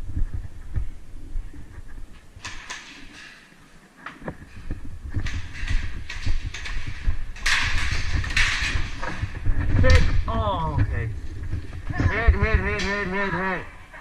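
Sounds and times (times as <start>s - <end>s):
rustling: 0.0s - 14.0s
handling thumps and knocks: 4.0s - 13.1s.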